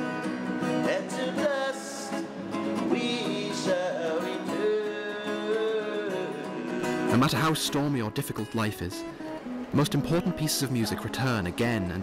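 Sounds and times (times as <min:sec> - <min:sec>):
guitar: 0:00.0 - 0:12.0
person singing with vibrato: 0:00.6 - 0:07.1.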